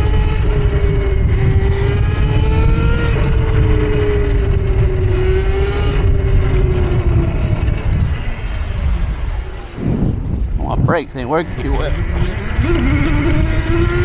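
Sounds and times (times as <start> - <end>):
heavy low rumble: 0.0 - 14.0
electric motor whining: 6.0 - 14.0.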